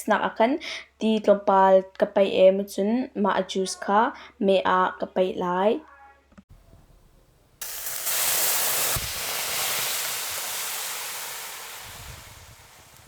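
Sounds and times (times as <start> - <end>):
liquid sizzling in hot pan: 7.6 - 13.0.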